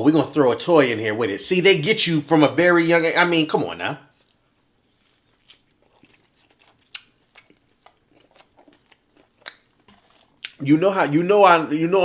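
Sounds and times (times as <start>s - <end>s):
chewing and crunching food: 4.1s - 10.7s.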